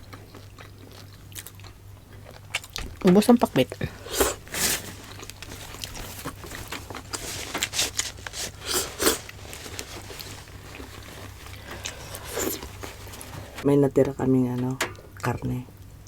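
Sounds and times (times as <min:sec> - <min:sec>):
chewing and mouth smacks: 0:00.0 - 0:03.1, 0:05.0 - 0:13.4
low steady hum: 0:00.0 - 0:16.0.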